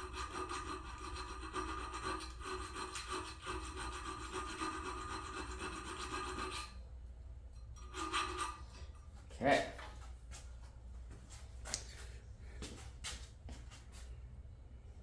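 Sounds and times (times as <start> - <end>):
hand file scraping metal: 0.0 - 6.8, 7.8 - 9.0.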